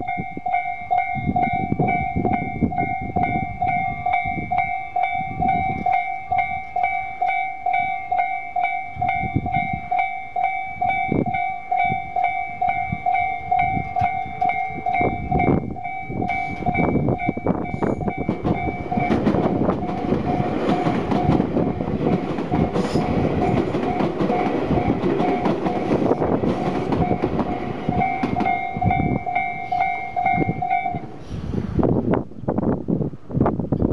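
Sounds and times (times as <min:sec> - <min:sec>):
level crossing bell ringing: 0:00.0 - 0:31.2
train rolling with wheel clatter: 0:00.0 - 0:33.9.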